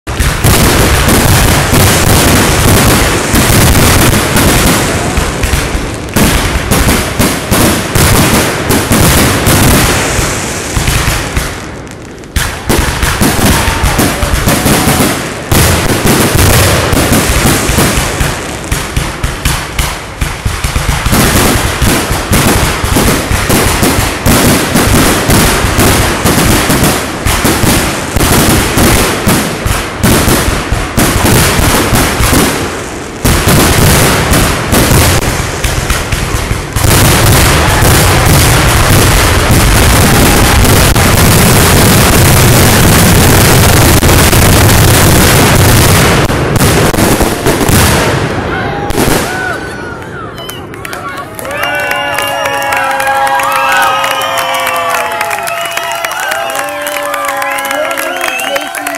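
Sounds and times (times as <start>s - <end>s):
fireworks bursting and crackling: 0.0s - 58.9s.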